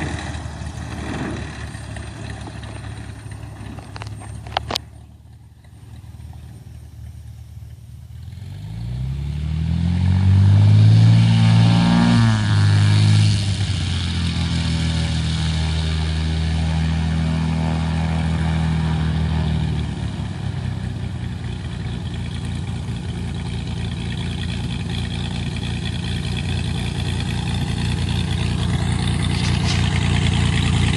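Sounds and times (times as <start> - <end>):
aircraft engine running: 0.0 - 30.9.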